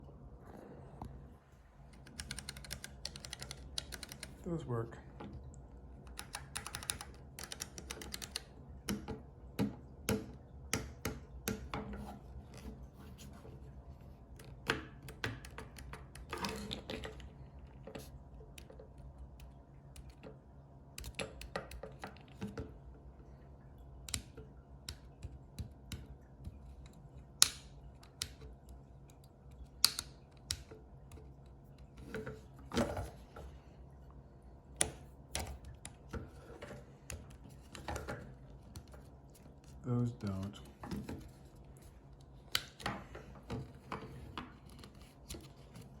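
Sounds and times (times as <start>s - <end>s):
faint hum: 0.0s - 46.0s
keyboard keys clicking: 1.9s - 4.4s, 6.1s - 9.1s.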